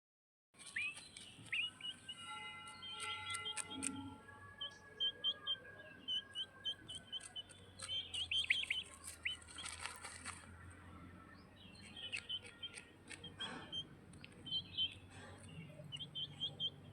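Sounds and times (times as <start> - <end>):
baby bird chirping: 0.6 - 10.4, 11.7 - 16.9
sharp clicks: 11.9 - 13.4.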